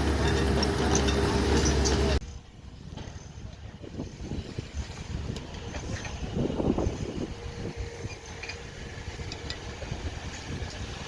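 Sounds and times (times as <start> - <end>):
diesel engine rumbling: 0.0 - 11.0.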